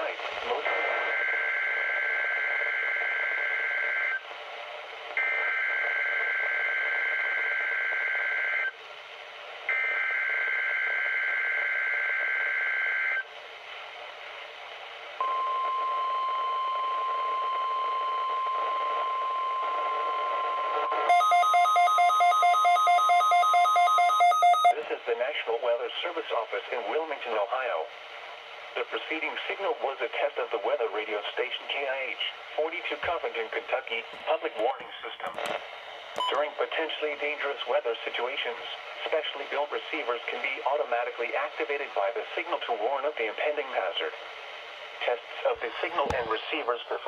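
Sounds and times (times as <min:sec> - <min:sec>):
steady single-pitch alarm tone: 0:15.2 - 0:24.7
rapidly pulsing beep: 0:17.4 - 0:24.7.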